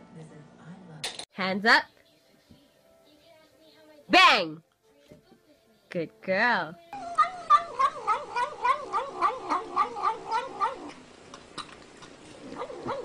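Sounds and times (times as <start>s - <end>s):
cat yowling: 7.0s - 11.0s, 12.4s - 13.0s.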